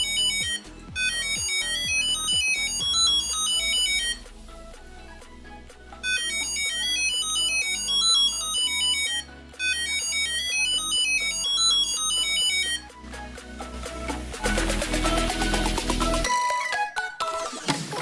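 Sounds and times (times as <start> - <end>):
toy electronic beeping melody: 0.0 - 4.3, 6.0 - 12.9.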